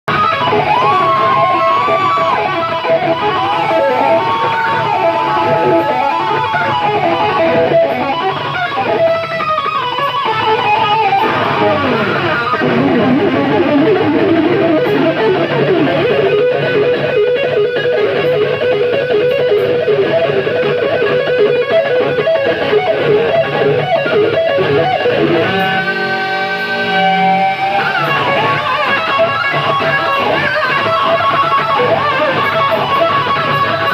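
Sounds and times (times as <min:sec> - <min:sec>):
distorted electric guitar solo: 0:00.1 - 0:33.9
live heavy metal band: 0:00.1 - 0:33.9.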